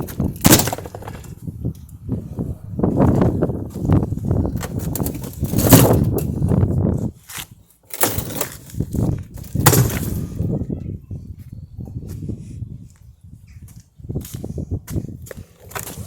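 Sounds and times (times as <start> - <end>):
rattling and scraping: 0.0 - 10.4.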